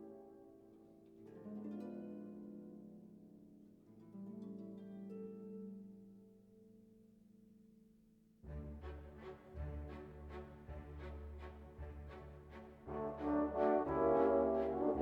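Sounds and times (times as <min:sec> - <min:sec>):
plucked harp-like music: 0:00.0 - 0:06.7, 0:12.0 - 0:15.0.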